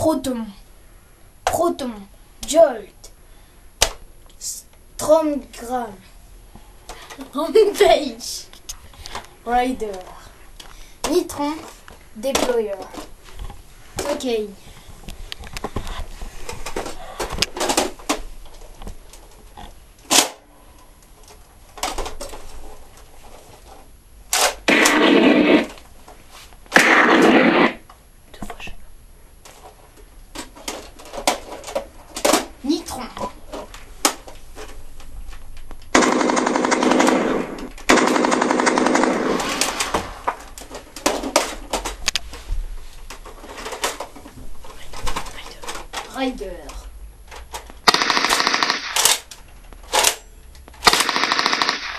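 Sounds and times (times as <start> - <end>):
machine-gun rattle effect: 24.4 - 25.8, 35.9 - 40.0, 47.8 - 49.3, 50.8 - 51.9
toy blaster firing burst: 24.7 - 25.8, 26.8 - 27.8, 47.9 - 49.2, 50.9 - 51.9
sharp clicks: 47.6 - 51.9.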